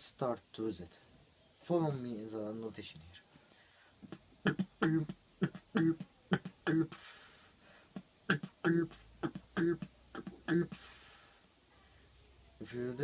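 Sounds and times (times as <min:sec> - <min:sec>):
beatbox clicks and bongo notes: 0:04.0 - 0:07.1, 0:07.9 - 0:10.9.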